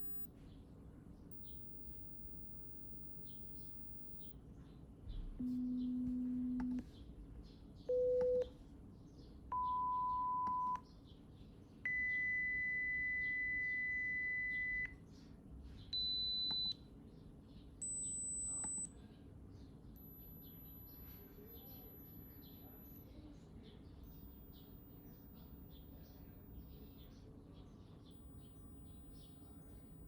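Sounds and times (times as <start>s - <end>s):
pure test tone beeps: 0.0s - 0.3s, 1.3s - 4.4s, 7.9s - 8.5s, 9.5s - 10.8s, 11.9s - 15.0s, 16.0s - 16.8s, 17.8s - 19.0s, 20.0s - 23.3s, 24.0s - 27.3s, 28.0s - 30.0s.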